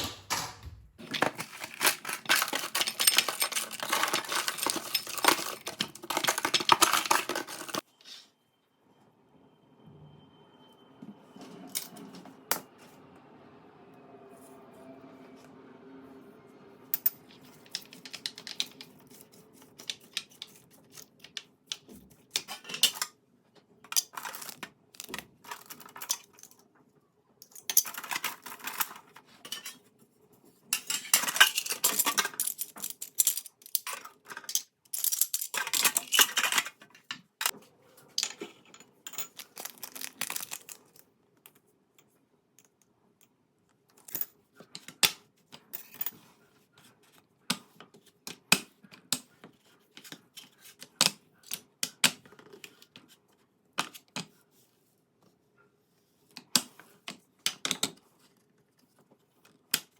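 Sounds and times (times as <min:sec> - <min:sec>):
kitchen utensils and dishes clinking: 0:00.0 - 0:08.2, 0:27.4 - 0:29.9, 0:30.8 - 0:36.8.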